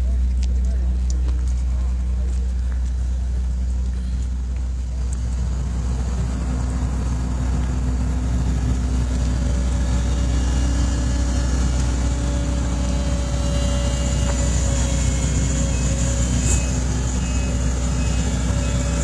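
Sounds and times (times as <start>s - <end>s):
heavy machinery engine rumbling: 0.0s - 19.0s.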